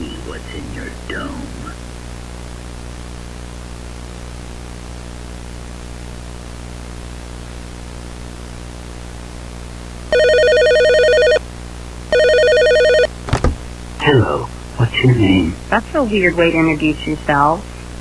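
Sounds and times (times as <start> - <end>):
steady low hum: 0.0 - 3.4, 10.0 - 18.0
electronic telephone ring: 10.1 - 11.4, 12.1 - 13.1.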